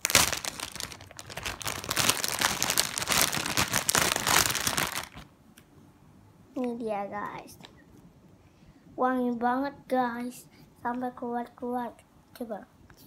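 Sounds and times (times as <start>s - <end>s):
packaging crinkling and rustling: 0.0s - 5.3s.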